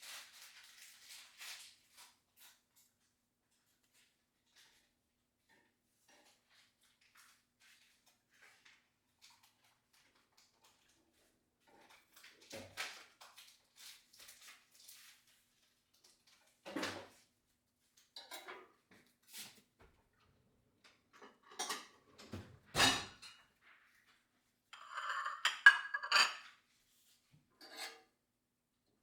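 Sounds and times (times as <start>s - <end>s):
dishes clinking: 22.7s - 23.4s, 24.8s - 26.5s.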